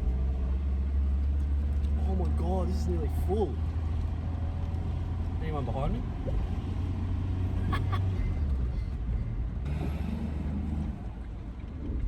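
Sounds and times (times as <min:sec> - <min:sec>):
diesel van engine droning: 0:00.0 - 0:12.0.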